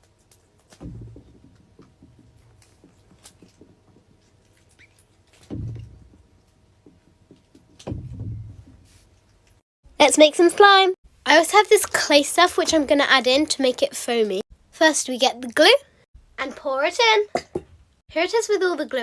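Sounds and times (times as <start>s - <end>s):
handling bumps: 0.4s - 9.6s.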